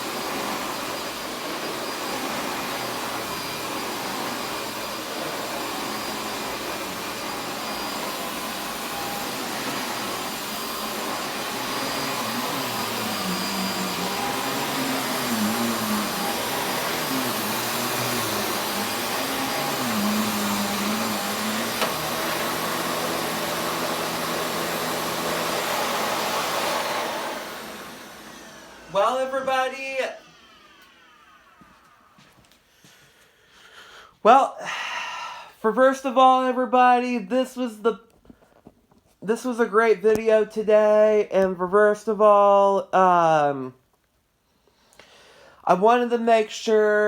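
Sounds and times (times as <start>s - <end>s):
upright vacuum cleaner running: 0.0s - 32.4s.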